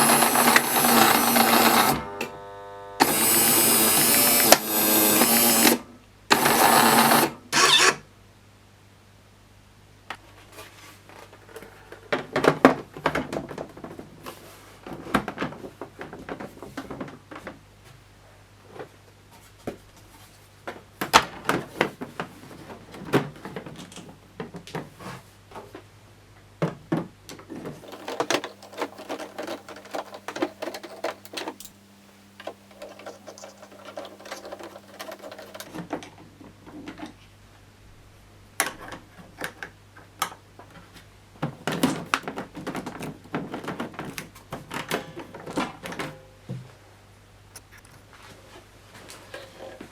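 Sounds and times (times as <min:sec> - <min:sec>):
faint steady hum: 0:00.0 - 0:49.9
plastic and metal parts clicking: 0:27.6 - 0:31.8, 0:32.4 - 0:36.2.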